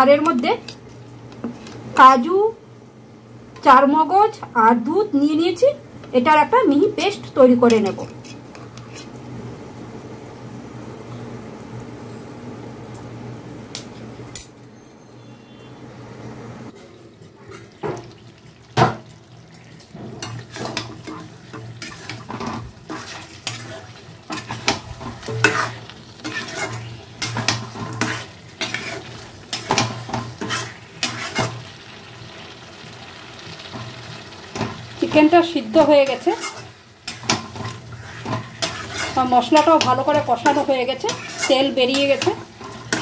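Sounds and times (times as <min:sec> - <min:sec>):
frying sizzle: 0:00.0 - 0:14.5, 0:15.5 - 0:43.0
spatula scraping metal pan: 0:07.7 - 0:09.1, 0:20.2 - 0:31.6, 0:35.8 - 0:43.0.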